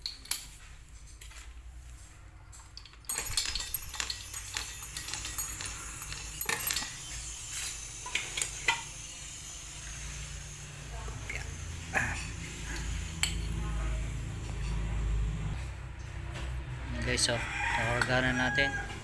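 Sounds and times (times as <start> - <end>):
metal tools clinking: 0.0 - 1.4, 2.6 - 13.8.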